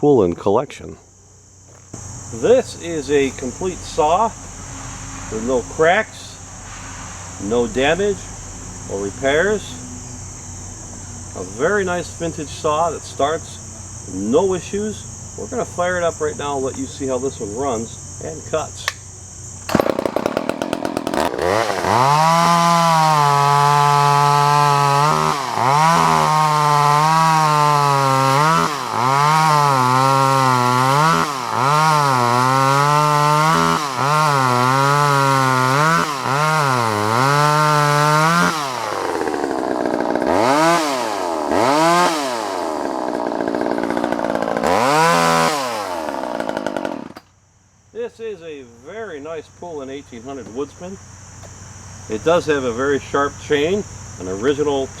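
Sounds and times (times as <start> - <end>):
chainsaw running and revving: 19.6 - 47.2.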